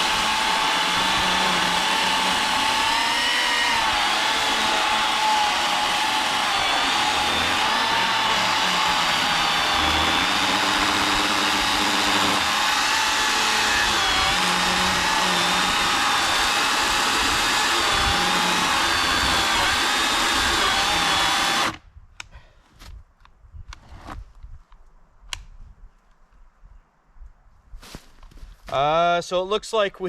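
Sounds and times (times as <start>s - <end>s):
chainsaw cutting log: 0.0s - 21.8s.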